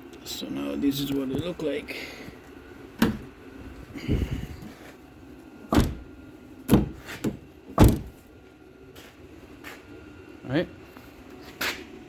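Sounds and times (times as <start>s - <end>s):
car door latch clunks and clicks: 3.0s - 3.3s, 5.7s - 8.2s.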